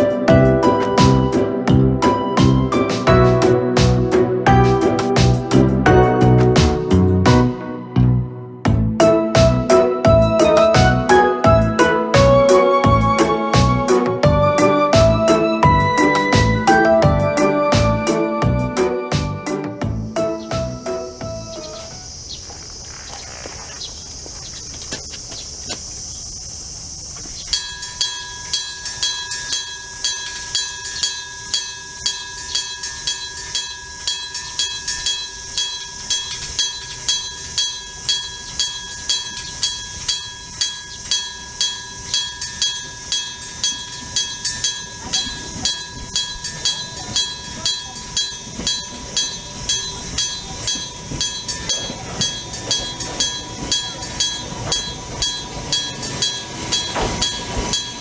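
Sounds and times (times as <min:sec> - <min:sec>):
level-crossing bell ringing: 0:19.9 - 0:22.3, 0:27.0 - 0:58.0.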